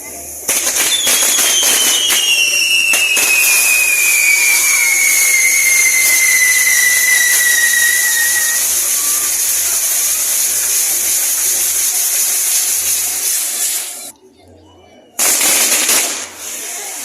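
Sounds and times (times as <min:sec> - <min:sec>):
fireworks burning with loud hiss: 0:00.0 - 0:14.1, 0:15.2 - 0:17.0
sharp firework cracks: 0:00.4 - 0:14.1, 0:15.2 - 0:17.0
firework whistle falling in pitch: 0:00.9 - 0:09.1.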